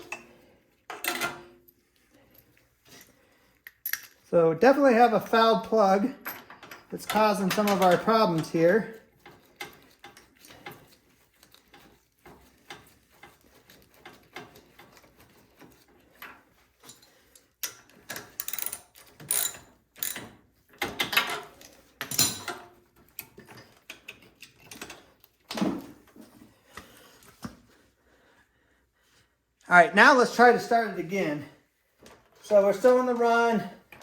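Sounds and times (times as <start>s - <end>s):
metallic clicks and scrapes: 6.4s - 25.5s.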